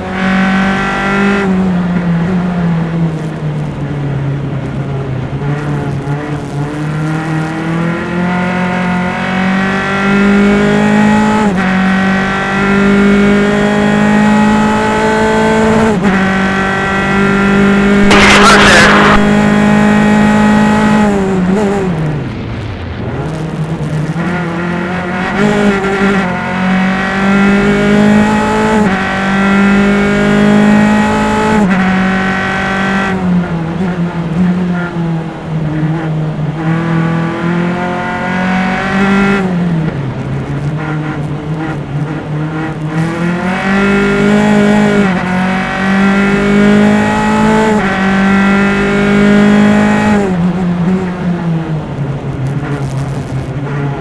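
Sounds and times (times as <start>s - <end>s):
race car engine revving: 17.5s - 21.8s.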